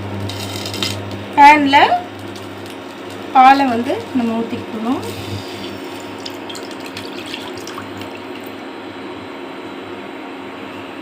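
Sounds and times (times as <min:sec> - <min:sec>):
milk pouring into a pan: 0:05.4 - 0:08.6.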